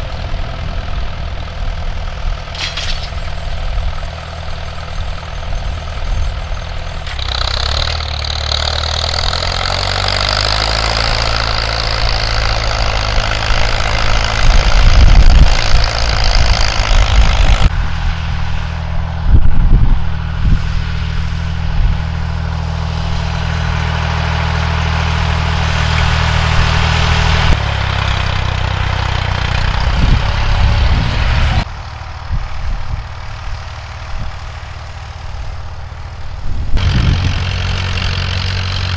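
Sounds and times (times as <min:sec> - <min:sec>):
tractor engines running: 0:00.0 - 0:38.9
loud rumbling thumps: 0:36.4 - 0:38.2.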